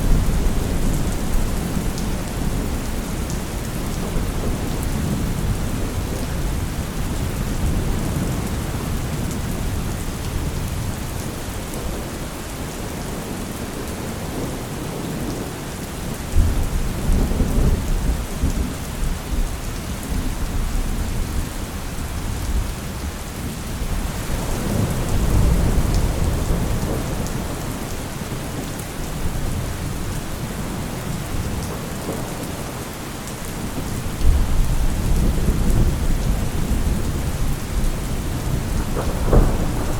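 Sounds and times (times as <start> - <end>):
steady rain: 0.0 - 39.9
rolling thunder: 23.8 - 28.0, 33.7 - 39.9.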